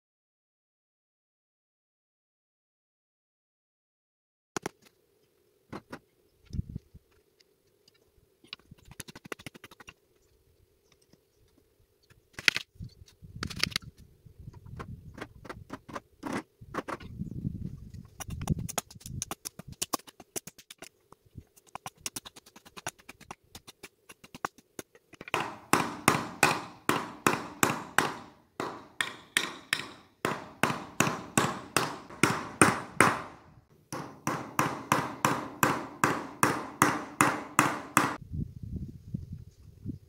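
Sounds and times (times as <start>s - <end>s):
hammer driving nails into wood: 22.7s - 38.2s.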